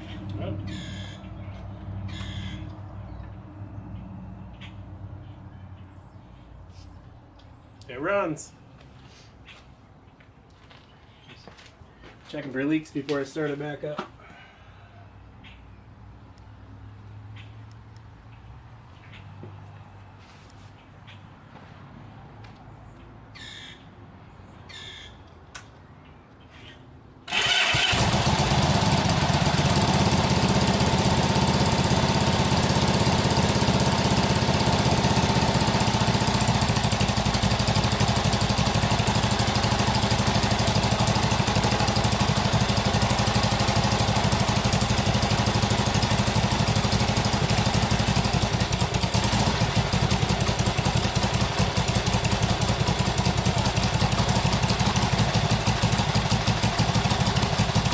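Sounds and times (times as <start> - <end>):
motorcycle engine idling: 0.0 - 3.4, 27.3 - 57.9.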